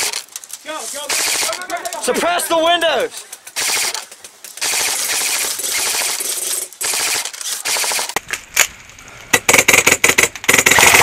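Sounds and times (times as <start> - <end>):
airsoft rifles firing full-auto bursts: 0.0 - 0.3, 1.0 - 2.9, 3.5 - 8.2, 9.4 - 11.0.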